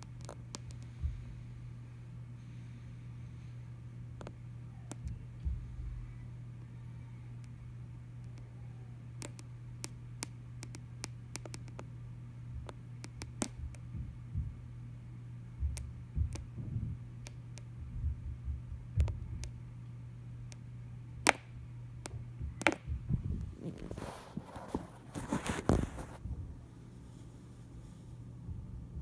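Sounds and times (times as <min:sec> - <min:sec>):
steady low hum: 0:00.0 - 0:29.0
muffled thumps and knocks: 0:15.6 - 0:17.0, 0:22.0 - 0:26.5.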